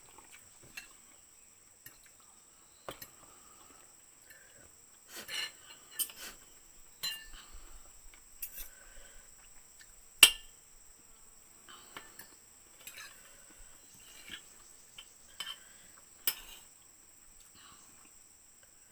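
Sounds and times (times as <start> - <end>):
cutlery clinking on plates: 5.2 - 6.4, 7.0 - 7.4, 8.4 - 8.8, 10.2 - 10.5, 12.0 - 13.4, 15.3 - 16.7.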